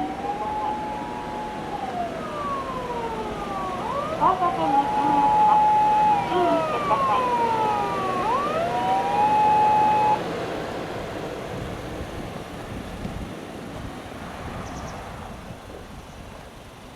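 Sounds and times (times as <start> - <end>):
ambulance electronic siren: 0.0 - 10.5.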